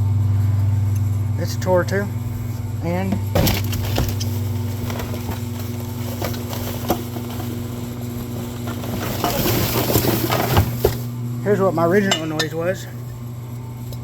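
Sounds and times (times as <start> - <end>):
low mechanical hum: 0.0 - 14.0
rustling: 3.3 - 11.2.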